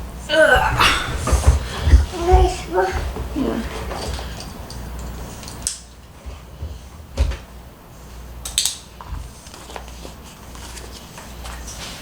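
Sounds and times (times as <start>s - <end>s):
kitchen knocks and clatters: 0.6s - 4.4s, 6.2s - 7.5s.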